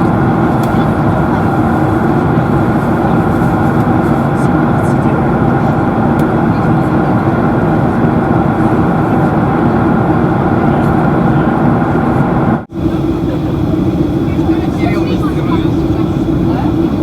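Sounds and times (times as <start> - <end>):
air rushing over fuselage: 0.0 - 17.0
constant cabin hum: 0.0 - 17.0
jet engines: 0.0 - 17.0.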